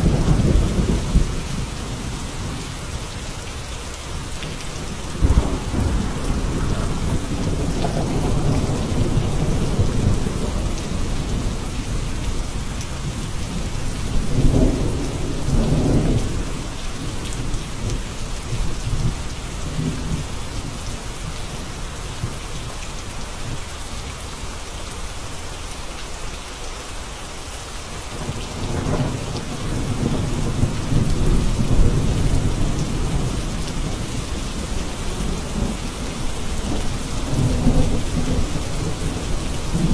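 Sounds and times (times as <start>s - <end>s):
steady rain: 0.0s - 39.9s
distant thunder rumbling: 4.5s - 20.8s, 28.2s - 39.9s.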